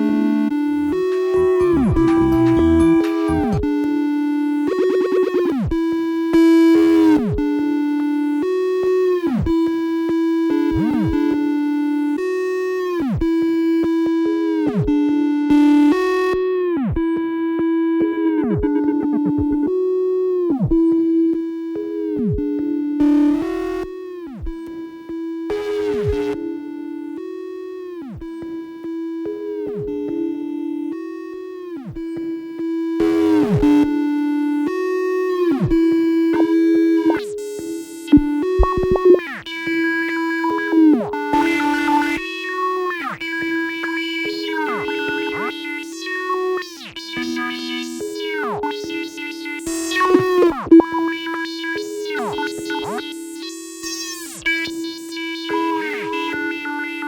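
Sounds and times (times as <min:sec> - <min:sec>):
synthesizer tones diving in pitch: 0:00.0 - 0:05.7.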